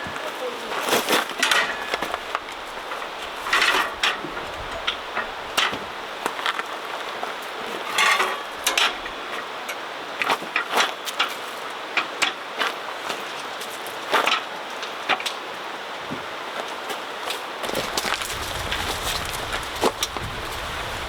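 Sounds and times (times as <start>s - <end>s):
steady background hiss: 0.0s - 21.0s
clicks and knocks of hard objects: 0.8s - 6.6s, 7.8s - 9.1s.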